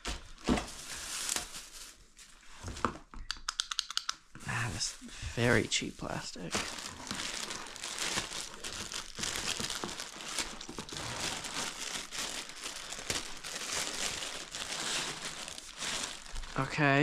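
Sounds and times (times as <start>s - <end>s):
plastic packaging crinkling: 0.0s - 2.8s, 4.8s - 17.0s
small clicks and knocks: 3.1s - 4.2s.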